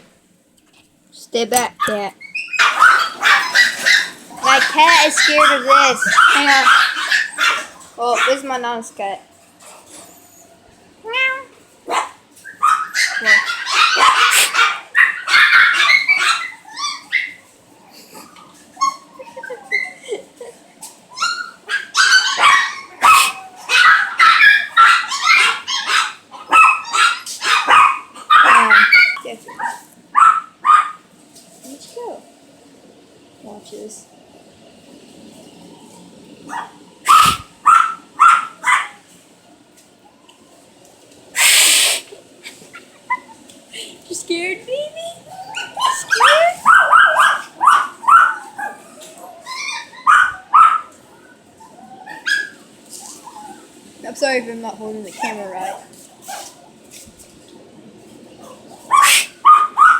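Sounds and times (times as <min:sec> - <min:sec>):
high-pitched meow-like cries: 0:11.0 - 0:11.5.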